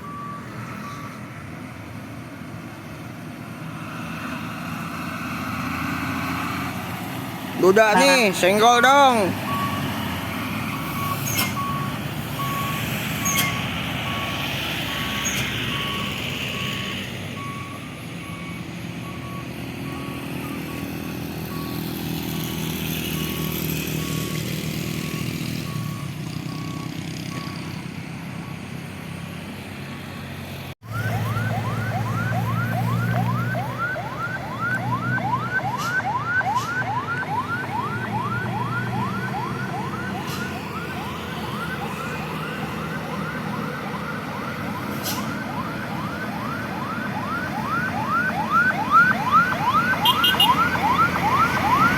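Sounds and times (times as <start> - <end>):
electronic horn yelping: 49.6 - 51.9.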